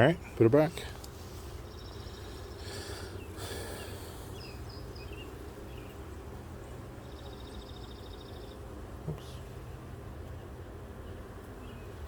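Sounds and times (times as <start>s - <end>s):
honeybees buzzing: 0.0s - 12.0s.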